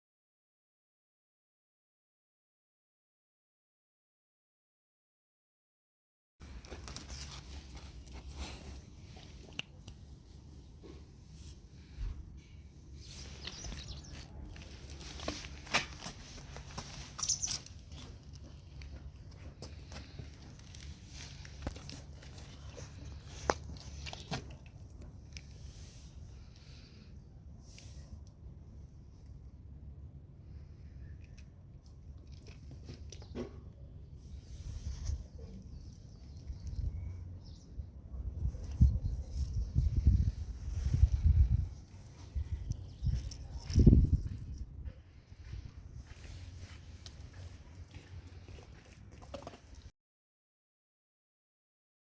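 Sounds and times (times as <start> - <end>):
dog chewing treats: 47.0 - 49.9.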